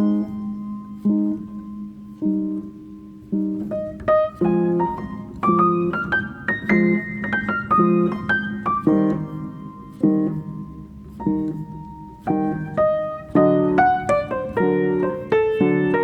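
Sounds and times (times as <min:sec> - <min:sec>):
piano-like keyboard music: 0:00.0 - 0:16.0.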